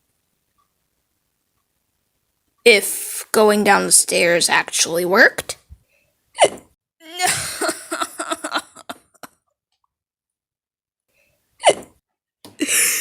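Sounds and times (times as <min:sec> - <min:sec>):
person hiccuping: 0:06.4 - 0:07.4, 0:11.6 - 0:11.9.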